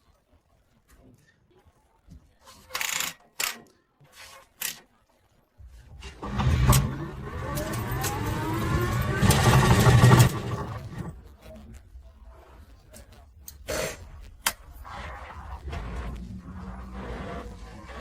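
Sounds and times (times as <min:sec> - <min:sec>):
electric motor whine rising: 0:06.2 - 0:11.1, 0:15.0 - 0:18.0.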